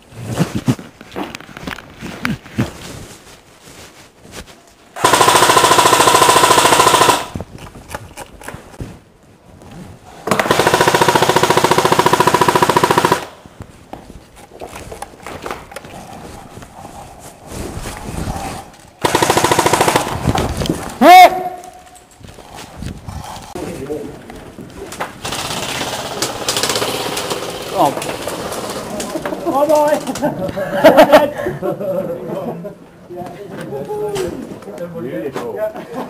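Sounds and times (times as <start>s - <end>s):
airsoft gun full-auto bursts: 5.0s - 7.4s, 10.3s - 13.4s, 19.0s - 20.3s, 25.2s - 28.8s.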